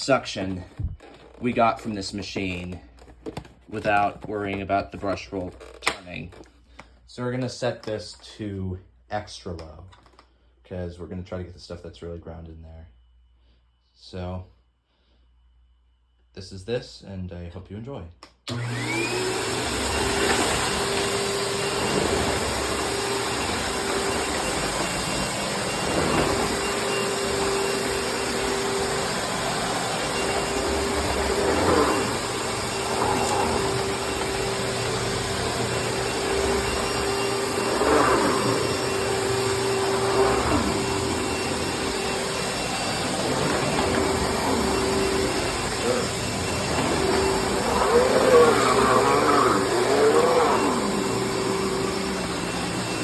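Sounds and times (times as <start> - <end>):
upright vacuum cleaner running: 0.0 - 6.5, 18.5 - 53.0.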